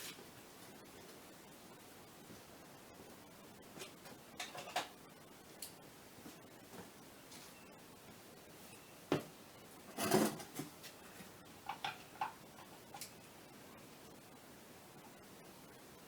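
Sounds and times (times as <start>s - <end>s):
clicks and knocks from handling objects: 11.7s - 13.2s.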